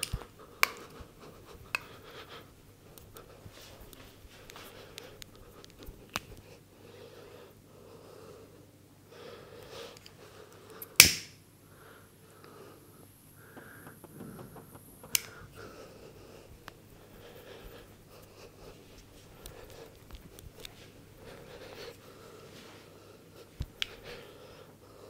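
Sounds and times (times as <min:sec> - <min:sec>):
hands rubbing and patting hair: 0:00.0 - 0:06.5, 0:13.5 - 0:24.2
loud sharp crack: 0:11.0 - 0:11.4.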